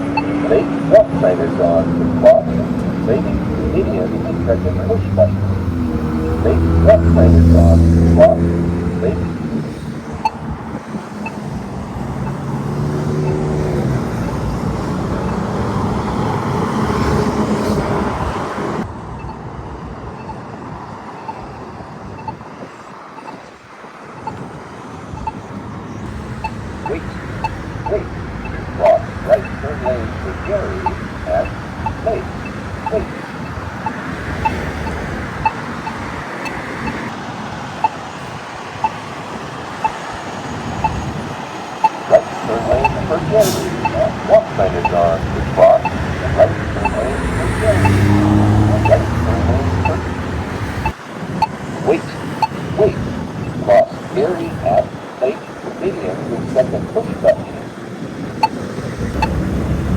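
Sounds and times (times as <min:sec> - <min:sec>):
road traffic passing: 0:00.0 - 0:59.9
vehicle engine hum: 0:00.0 - 0:59.9
crosswalk button ticking: 0:12.0 - 0:15.6, 0:26.1 - 0:37.1, 0:41.7 - 0:51.6.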